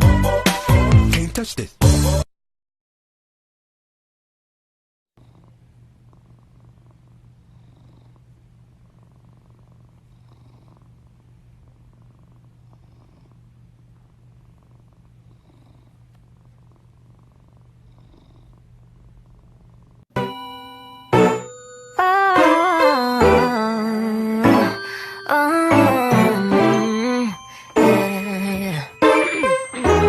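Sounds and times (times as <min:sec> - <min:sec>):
cat purring: 0:05.2 - 0:20.1, 0:21.4 - 0:30.0.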